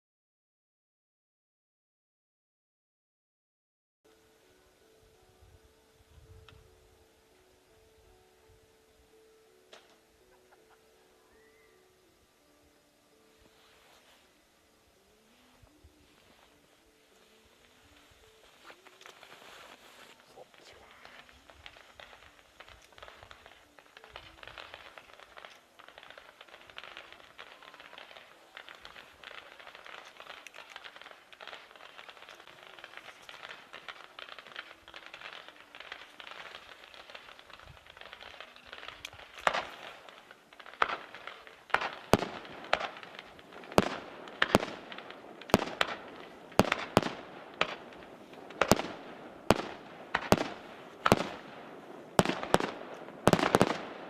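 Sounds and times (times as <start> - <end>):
fireworks crackling: 9.1 - 11.8, 13.1 - 54.0
loud firework bangs: 21.0 - 54.0.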